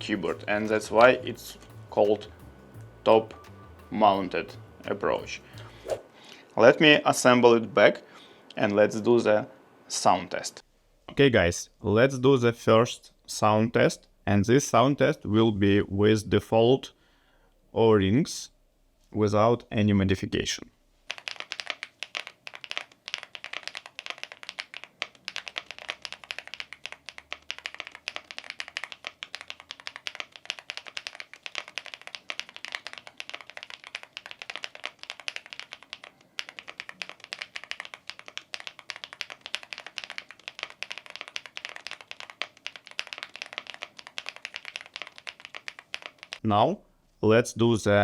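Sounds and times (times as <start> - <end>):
mechanical keyboard typing: 21.1 - 46.4.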